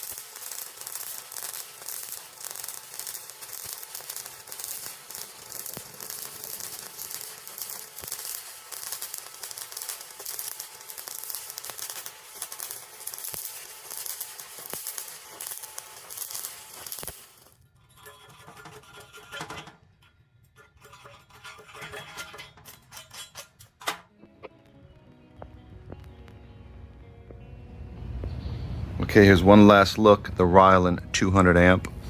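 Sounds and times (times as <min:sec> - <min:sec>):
welding arc crackling sizzle: 0:00.0 - 0:23.8.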